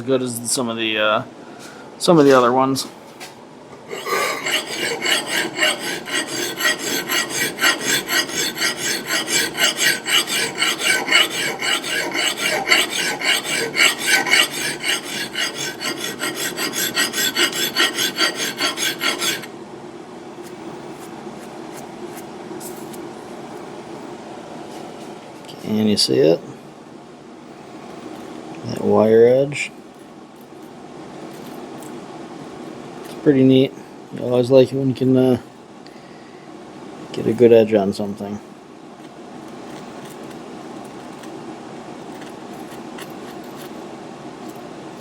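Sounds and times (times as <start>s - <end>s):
faint steady hum: 0.0s - 45.0s
file rasping on steel: 3.8s - 19.5s.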